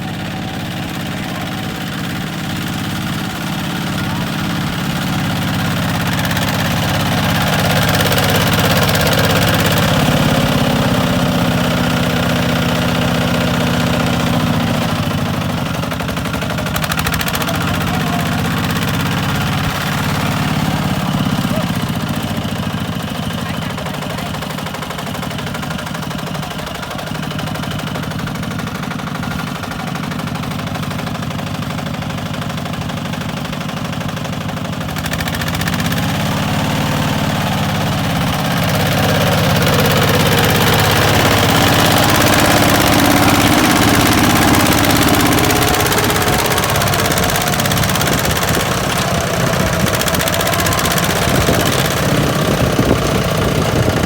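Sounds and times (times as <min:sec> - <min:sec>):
diesel tractor engine knocking: 0:00.0 - 0:54.0.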